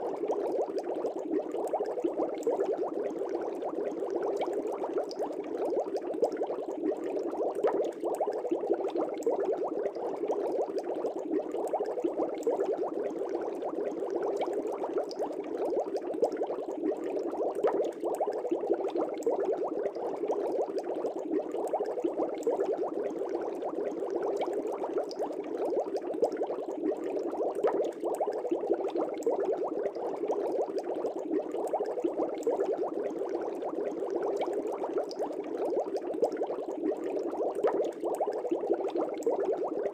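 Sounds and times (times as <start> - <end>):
aquarium air bubbling: 0.0 - 39.9.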